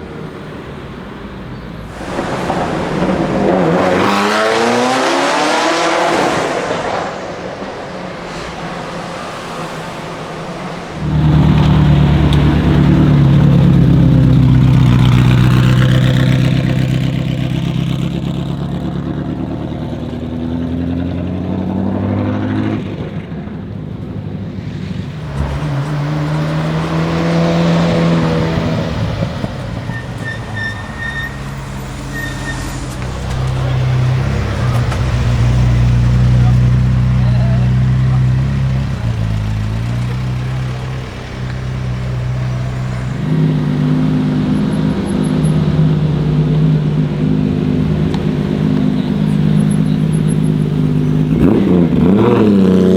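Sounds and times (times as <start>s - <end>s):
car engine running loud and low: 0.0s - 52.9s.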